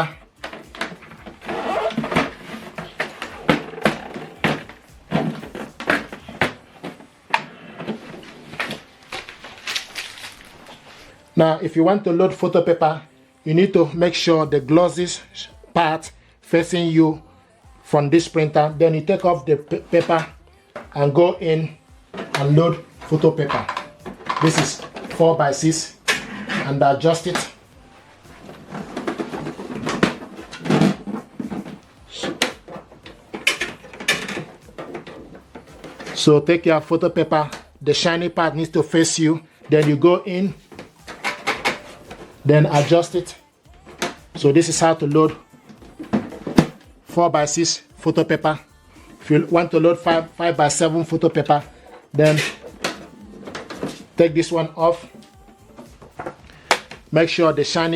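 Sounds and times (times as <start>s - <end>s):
paper and plastic tray handled: 0.0s - 11.2s, 22.2s - 43.4s
paper sliding and rustling: 5.2s - 11.2s.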